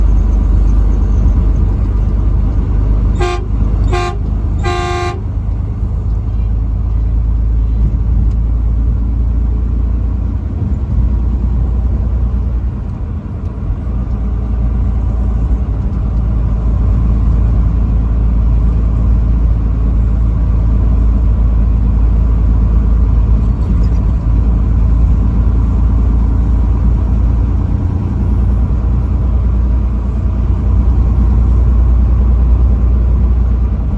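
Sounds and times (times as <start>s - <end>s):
truck driving rumble: 0.0s - 33.9s
truck horn blasts: 3.0s - 5.5s.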